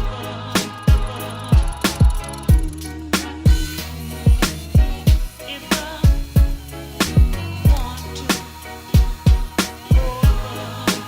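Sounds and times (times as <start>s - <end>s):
held chords: 0.0s - 11.0s
deep falling kick drums: 0.9s - 2.7s, 4.3s - 5.3s.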